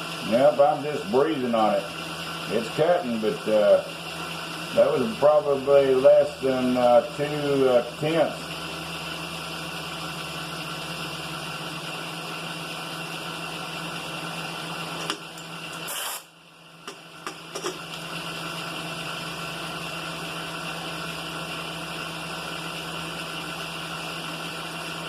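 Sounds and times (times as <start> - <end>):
milling machine hum: 0.0 - 25.0
short hiss: 15.9 - 16.3.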